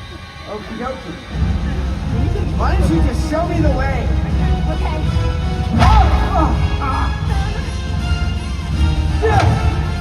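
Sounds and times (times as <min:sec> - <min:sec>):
loud soundtrack music: 0:01.2 - 0:10.0.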